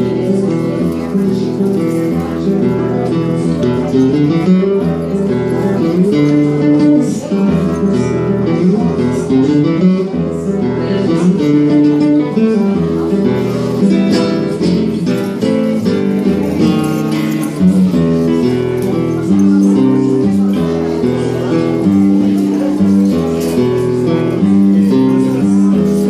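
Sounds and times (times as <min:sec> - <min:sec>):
guitar strumming: 0:00.0 - 0:26.0.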